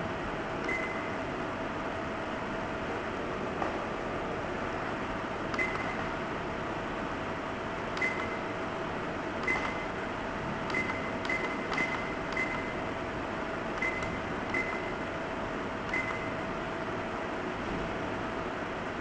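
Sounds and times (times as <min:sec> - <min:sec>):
faint hum and hiss: 0:00.0 - 0:19.0
button clicks with short beeps: 0:00.6 - 0:01.1, 0:05.5 - 0:06.1, 0:08.0 - 0:08.4, 0:09.4 - 0:09.9, 0:10.7 - 0:12.7, 0:13.8 - 0:15.0, 0:15.9 - 0:16.4.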